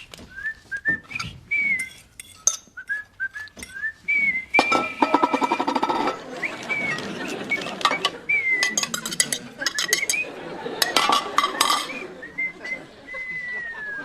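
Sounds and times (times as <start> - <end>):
person whistling a tune: 0.0 - 9.0, 9.7 - 14.0
clicks and clinks of handled objects: 0.1 - 3.9, 4.6 - 6.2, 7.0 - 10.2, 10.8 - 12.0.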